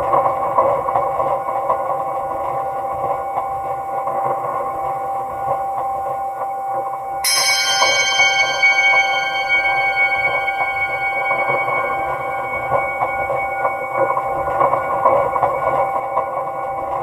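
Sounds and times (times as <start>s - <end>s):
ambient electronic drone: 0.0s - 17.0s
bright bell-like chime: 7.2s - 17.0s.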